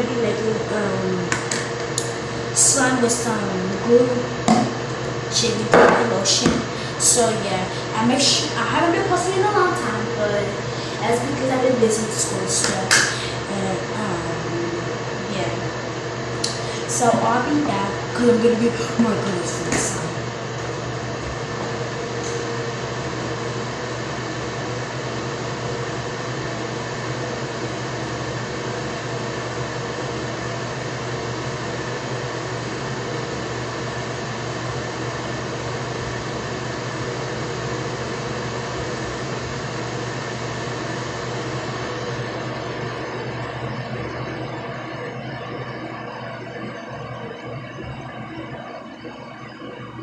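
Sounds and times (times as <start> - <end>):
droning rushing mechanical noise: 0.0 - 23.4.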